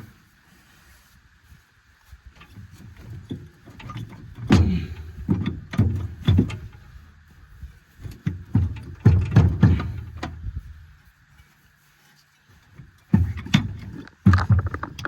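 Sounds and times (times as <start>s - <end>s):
heavy metal clunks and knocks: 3.0s - 6.8s, 8.0s - 10.4s, 13.0s - 15.0s.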